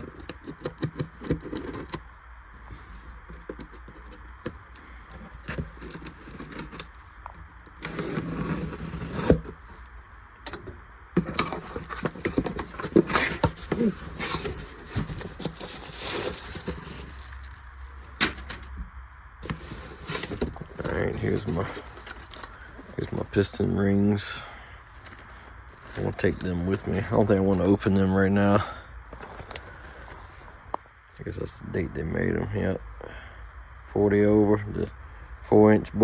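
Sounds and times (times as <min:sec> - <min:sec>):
cardboard boxes being handled: 0:00.0 - 0:09.8, 0:11.1 - 0:18.8, 0:19.4 - 0:23.8, 0:24.9 - 0:27.8, 0:29.1 - 0:30.6.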